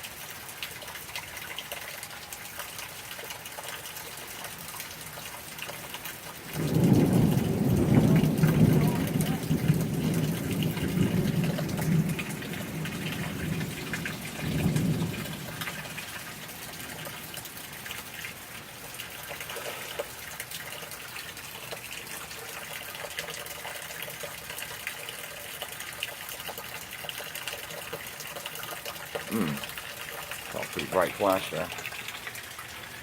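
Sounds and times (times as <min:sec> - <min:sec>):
steady rain: 0:00.0 - 0:33.0
thunder rumbling: 0:06.6 - 0:16.1.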